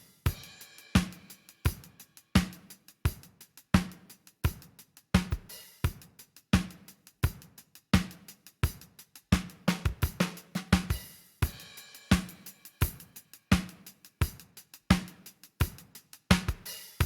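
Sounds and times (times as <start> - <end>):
drum kit playing a steady beat: 0.0 - 17.0
hi-hat strokes: 0.0 - 17.0.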